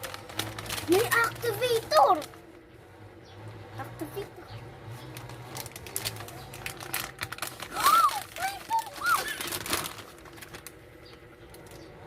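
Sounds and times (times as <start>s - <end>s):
plastic packaging crinkling: 0.0s - 2.5s, 5.0s - 11.8s.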